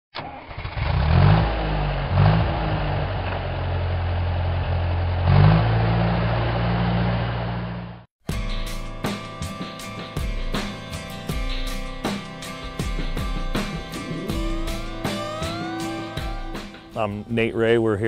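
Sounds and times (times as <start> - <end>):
farm machine engine revving: 0.2 - 8.0
music: 8.2 - 18.0.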